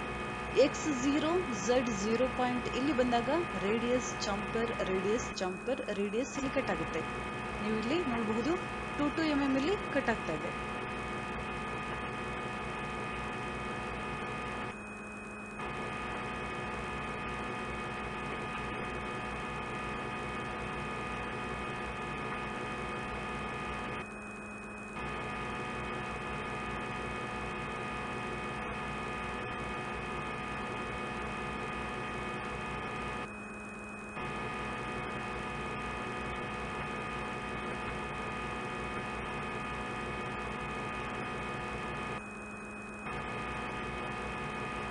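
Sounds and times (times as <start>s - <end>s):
lathe machining electric hum: 0.0s - 44.9s.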